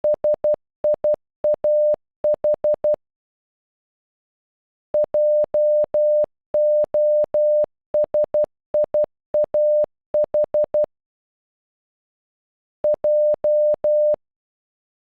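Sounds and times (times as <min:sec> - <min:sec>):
morse code beeps: 0:00.0 - 0:03.0, 0:05.0 - 0:10.9, 0:12.8 - 0:14.2.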